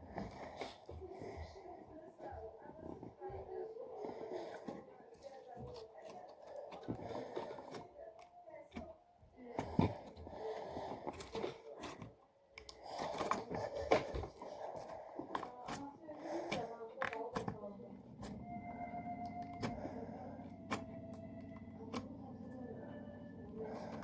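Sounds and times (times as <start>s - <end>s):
hands squishing slime: 4.0s - 24.0s
sticky clicks and crackles: 9.5s - 22.6s.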